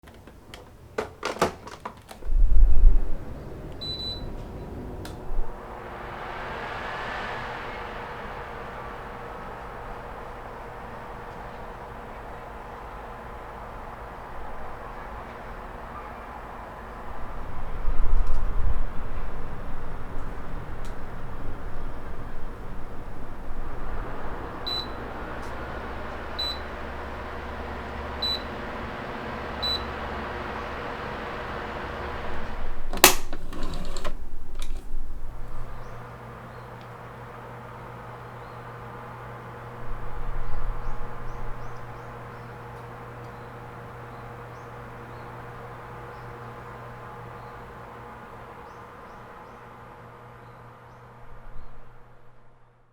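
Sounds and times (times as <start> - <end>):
fan switch clicks: 0.0 - 5.4, 18.0 - 18.6, 24.6 - 30.7, 32.2 - 37.0
fan airflow rushing: 0.0 - 52.6
brief low rumble: 2.2 - 12.6.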